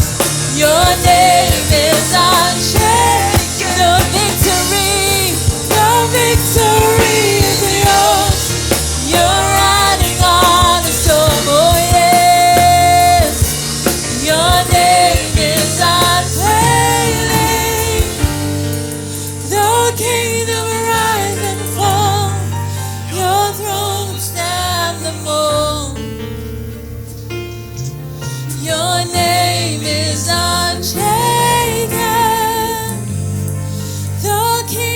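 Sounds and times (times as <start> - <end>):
person singing with vibrato: 0.0 - 26.1
backing band with bass: 0.0 - 34.9.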